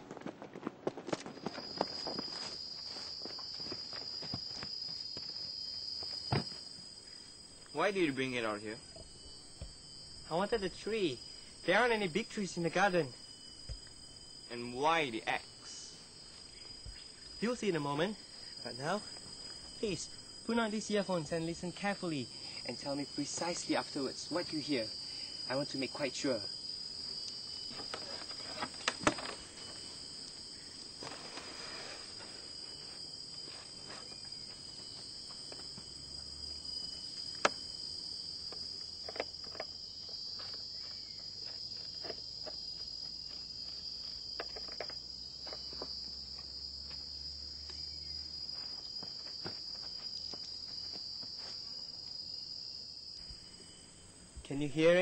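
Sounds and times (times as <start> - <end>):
high-pitched insect chorus: 0.9 - 55.0.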